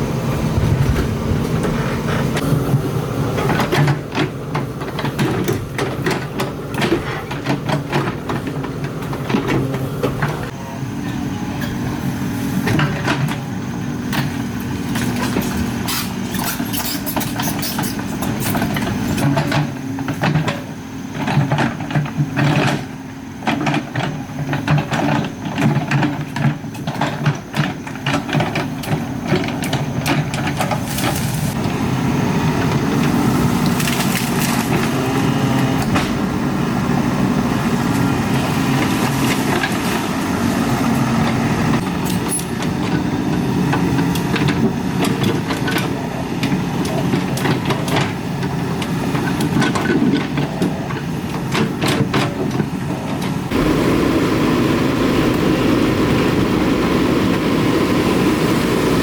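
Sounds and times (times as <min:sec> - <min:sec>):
excavator diesel engine: 0:00.0 - 0:59.0
knocks and clatters of digging: 0:03.4 - 0:10.6, 0:14.1 - 0:31.7, 0:33.0 - 0:36.3, 0:37.7 - 0:53.6.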